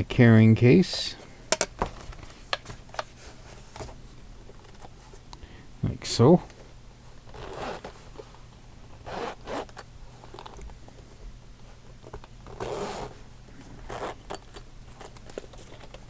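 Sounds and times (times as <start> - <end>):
zipper being pulled: 7.3 - 8.0, 9.0 - 9.8, 12.5 - 13.2, 13.9 - 14.4.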